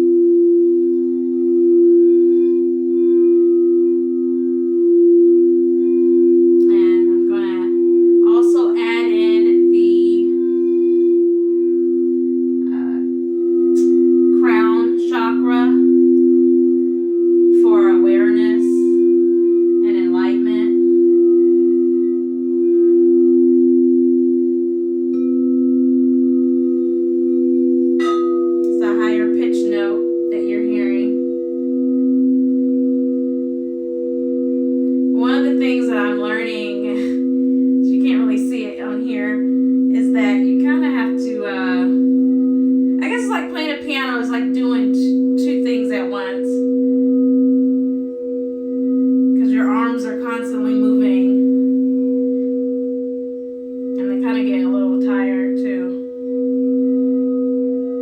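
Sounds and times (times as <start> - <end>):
singing bowls ringing drone: 0.0 - 58.0
person speaking: 6.7 - 10.3, 28.7 - 31.2, 35.2 - 37.2, 37.8 - 42.1, 43.0 - 46.7, 49.4 - 51.6, 54.0 - 56.0.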